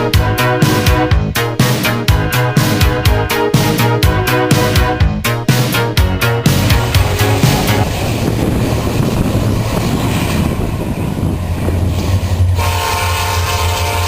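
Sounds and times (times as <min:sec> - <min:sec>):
locomotive air horn: 0:00.0 - 0:05.4, 0:06.2 - 0:08.0, 0:11.8 - 0:14.0
locomotive rumbling on rails: 0:00.0 - 0:14.0.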